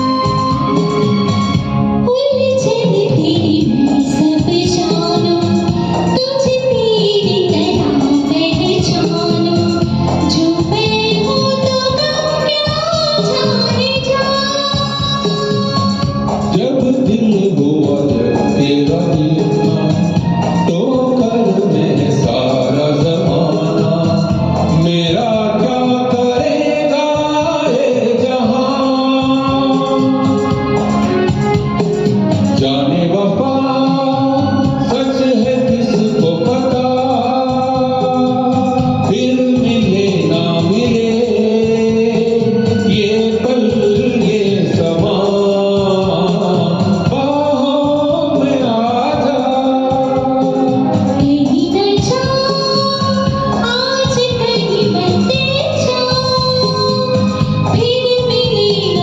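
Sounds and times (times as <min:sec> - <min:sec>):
person singing karaoke: 0:00.0 - 0:59.0
recorded backing track: 0:00.0 - 0:59.0.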